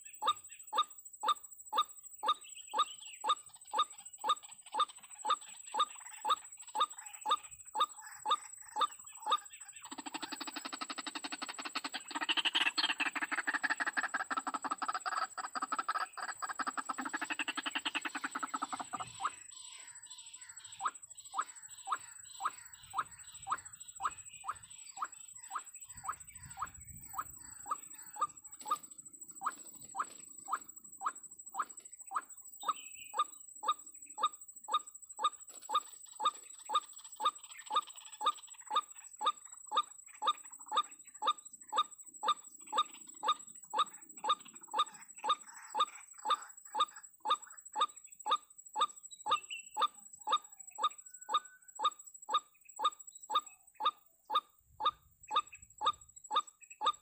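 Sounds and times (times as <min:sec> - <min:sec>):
bird calling: 0:00.0 - 0:57.0.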